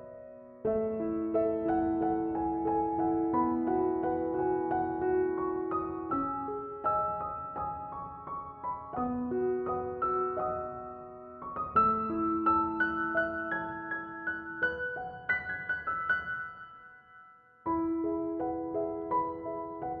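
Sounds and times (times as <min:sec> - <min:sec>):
gentle piano music: 0:00.0 - 0:20.0.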